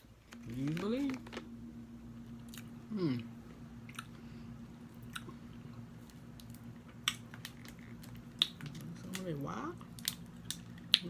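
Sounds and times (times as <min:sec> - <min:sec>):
steady low hum: 0:00.0 - 0:11.0
person chewing food: 0:03.8 - 0:04.2, 0:04.9 - 0:09.2, 0:09.8 - 0:11.0.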